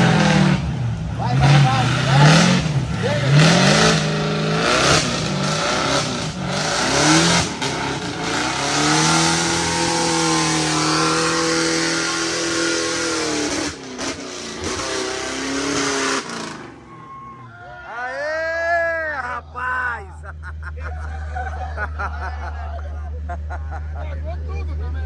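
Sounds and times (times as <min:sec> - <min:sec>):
engine revving hard: 0:00.0 - 0:17.5.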